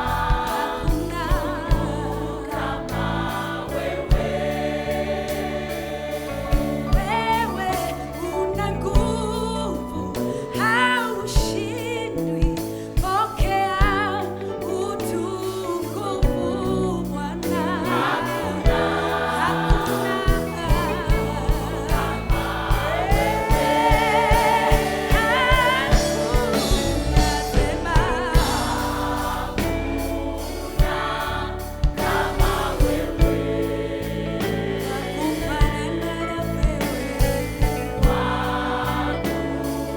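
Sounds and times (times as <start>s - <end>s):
steady drum beat: 0.0s - 8.2s, 17.5s - 39.9s
choir singing over a band: 0.0s - 39.9s.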